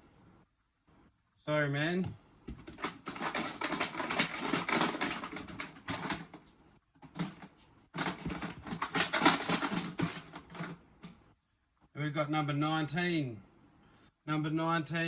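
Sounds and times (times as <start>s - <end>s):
raffle numbers rattling in container: 2.7s - 6.4s, 7.0s - 11.2s.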